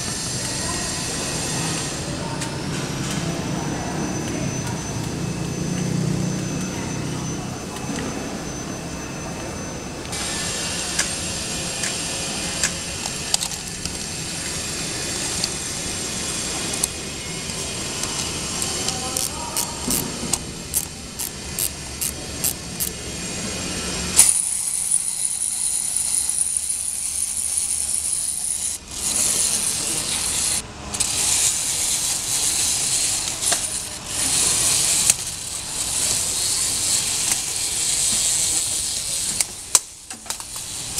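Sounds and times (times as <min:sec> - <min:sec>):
spring motor whirring: 0:10.1 - 0:40.9
spring winding ratchet clicks: 0:18.9 - 0:20.0, 0:20.7 - 0:23.0, 0:24.2 - 0:38.7.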